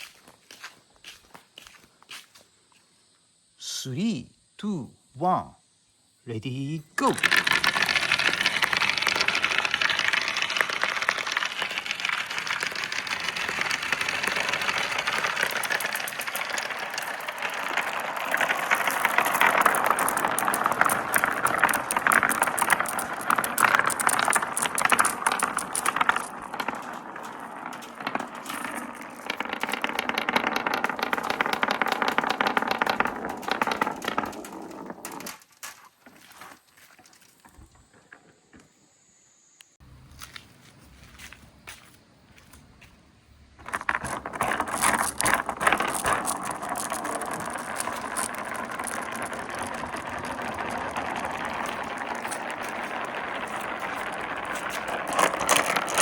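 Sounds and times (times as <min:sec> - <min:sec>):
glass marbles rattling down slopes: 0:07.0 - 0:37.4, 0:43.6 - 0:56.0.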